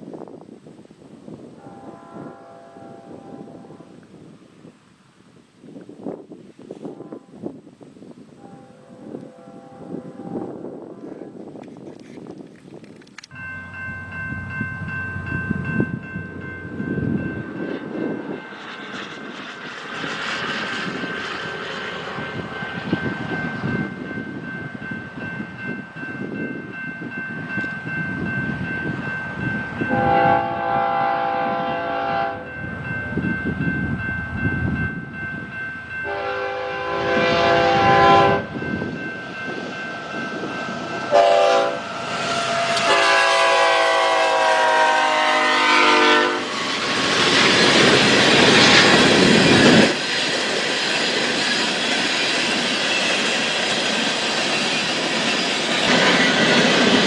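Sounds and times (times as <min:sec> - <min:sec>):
freight train rumbling: 0:00.0 - 0:57.0
locomotive horn blasts: 0:01.6 - 0:04.2, 0:06.7 - 0:07.6, 0:08.3 - 0:11.5, 0:29.8 - 0:32.6, 0:36.0 - 0:38.6, 0:40.4 - 0:46.6.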